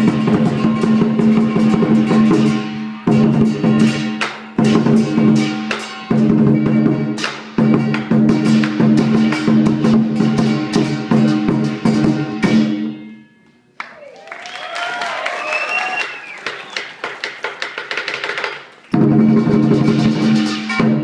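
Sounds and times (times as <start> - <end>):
drum cymbals and gong beat: 0.0 - 13.2, 19.0 - 21.0
rhythmic percussion strikes: 0.0 - 13.6, 16.0 - 21.0.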